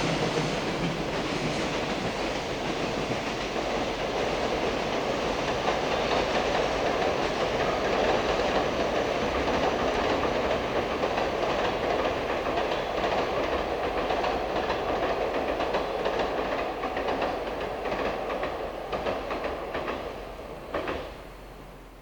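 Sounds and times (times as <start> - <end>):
train wheels clattering: 0.0 - 21.7.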